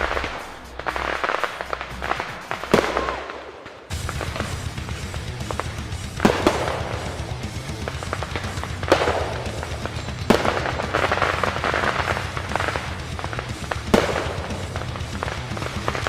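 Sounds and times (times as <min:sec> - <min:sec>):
fireworks booming: 0:00.0 - 0:16.0
fireworks crackling: 0:00.0 - 0:16.0
music with low bass: 0:03.9 - 0:16.0.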